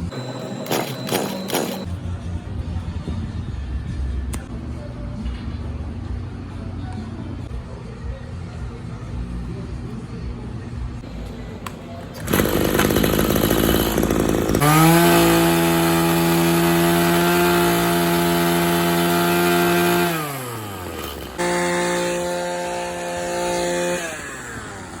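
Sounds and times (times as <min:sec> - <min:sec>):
string trimmer engine revving: 0:00.2 - 0:01.9, 0:12.2 - 0:25.0.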